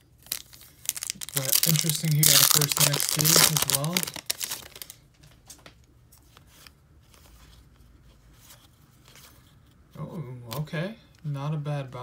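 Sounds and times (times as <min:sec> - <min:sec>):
cards and wrapper rustling: 0:00.0 - 0:05.6.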